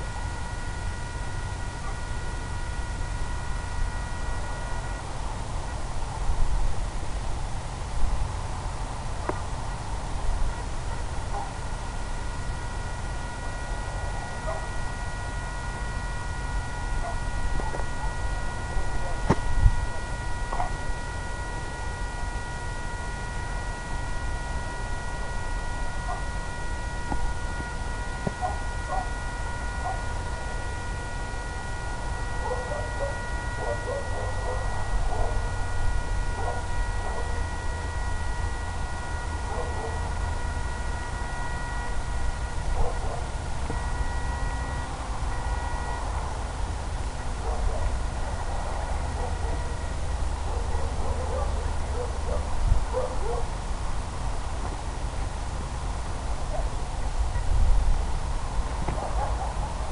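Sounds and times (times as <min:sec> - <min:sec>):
steady high-toned hum: 0:00.0 - 0:59.9.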